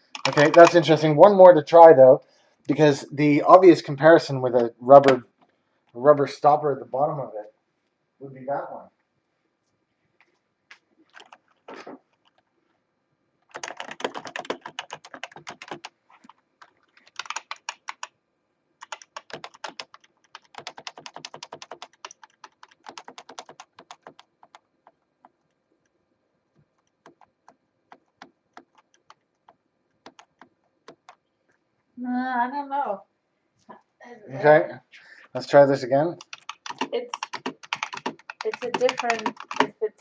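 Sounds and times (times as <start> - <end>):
keyboard keys clattering: 0.0 - 1.1, 11.1 - 11.6, 13.5 - 18.1, 18.8 - 25.4, 30.0 - 31.2, 36.2 - 39.7.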